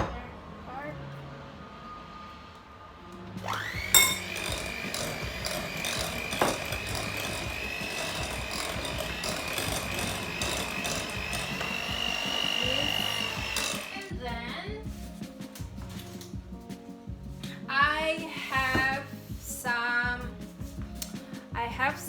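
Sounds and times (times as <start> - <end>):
electric mixer motor whine: 3.4 - 14.1.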